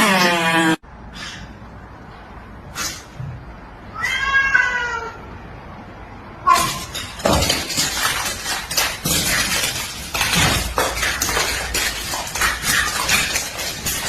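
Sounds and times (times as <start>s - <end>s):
cat meowing: 3.9s - 5.2s
clatter of objects knocked over: 6.5s - 14.0s.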